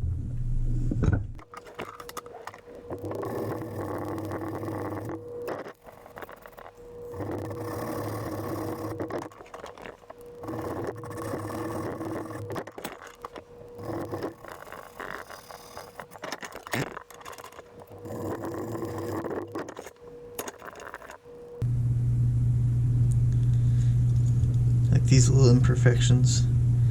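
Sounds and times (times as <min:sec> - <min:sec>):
steady background hum: 0:00.0 - 0:26.9
power tool scraping metal: 0:01.4 - 0:21.6.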